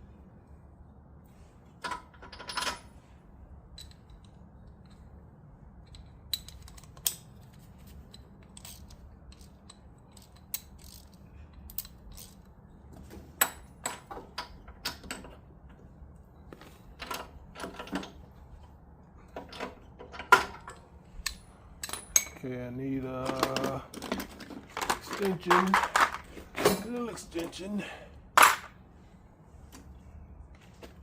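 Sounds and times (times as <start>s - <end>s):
socket ratchet clicking: 8.4s - 12.5s
metal tool clicks and knocks: 19.4s - 22.4s.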